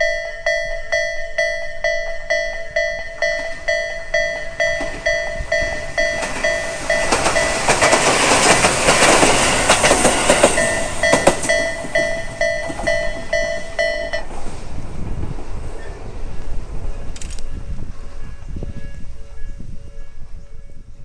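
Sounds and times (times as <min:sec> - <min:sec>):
level-crossing bell chiming: 0:00.0 - 0:14.3
train wheels clacking over rail joints: 0:03.2 - 0:14.4.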